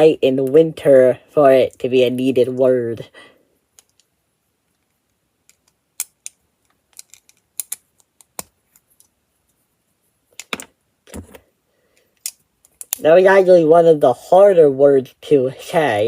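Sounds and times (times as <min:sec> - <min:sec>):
plastic bricks clicking: 0:03.8 - 0:04.1, 0:04.7 - 0:09.1, 0:12.0 - 0:13.0.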